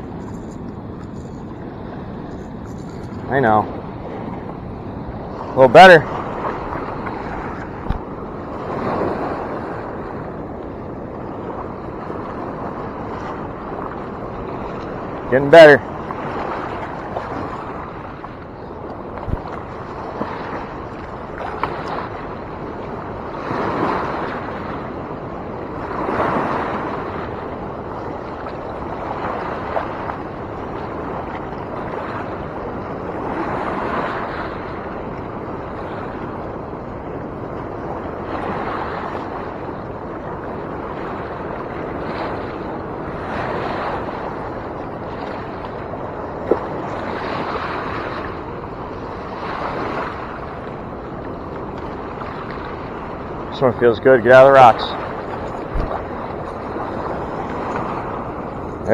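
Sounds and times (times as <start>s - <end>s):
river water rushing: 0.0s - 24.7s, 38.0s - 58.9s
wind on microphone: 0.0s - 58.9s.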